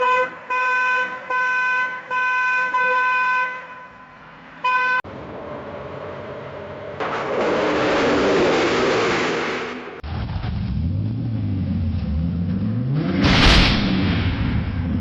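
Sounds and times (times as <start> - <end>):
car horn honking: 0.0 - 5.0.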